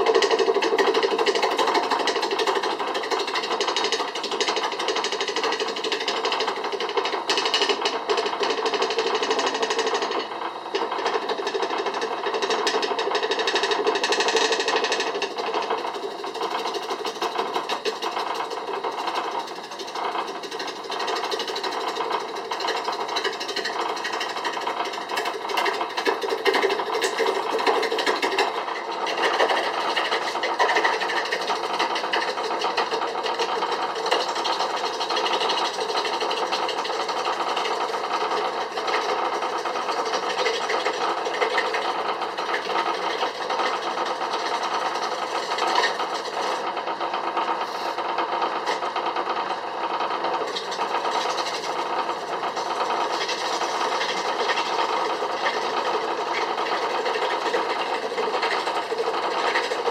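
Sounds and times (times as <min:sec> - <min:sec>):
lathe motor humming: 0:00.0 - 0:59.9
turning tool scraping wood: 0:38.5 - 0:46.7, 0:47.4 - 0:49.5, 0:50.2 - 0:59.9.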